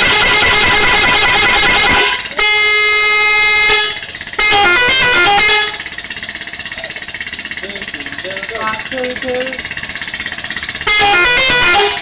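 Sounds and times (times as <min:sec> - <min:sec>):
multi-tone bus air horn: 0:00.0 - 0:06.0, 0:10.8 - 0:12.0.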